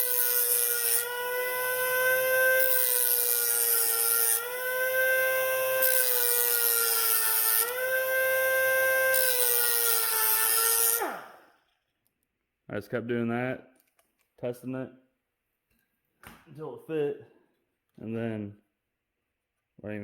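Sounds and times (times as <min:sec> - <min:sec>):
rotary tool grinding plastic: 0:00.0 - 0:11.5.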